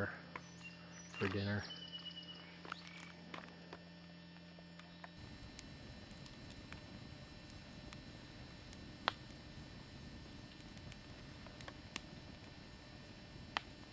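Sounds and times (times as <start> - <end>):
campfire crackling: 0.0 - 13.9
campfire pops: 5.0 - 13.9.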